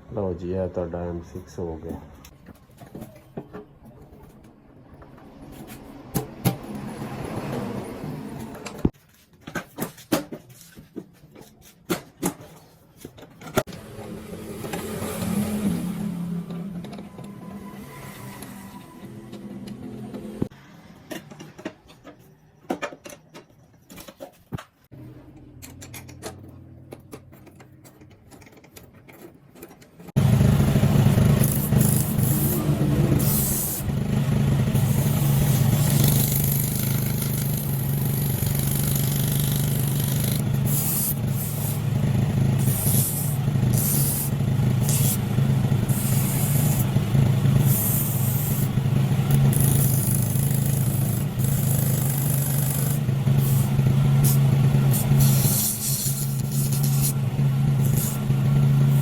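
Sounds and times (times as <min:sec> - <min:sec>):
motorcycle engine idling: 0:30.2 - 0:59.0.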